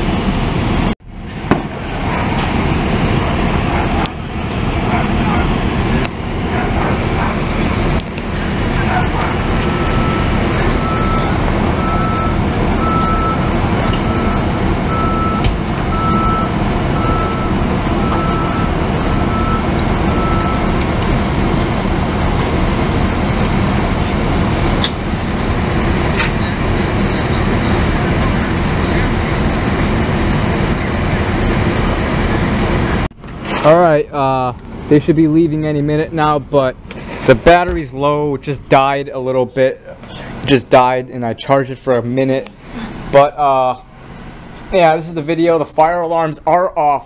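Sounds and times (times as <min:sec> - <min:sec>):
reversing beeper: 0:00.0 - 0:01.0, 0:07.5 - 0:21.5, 0:25.2 - 0:32.5
fire truck engine running: 0:00.0 - 0:46.7.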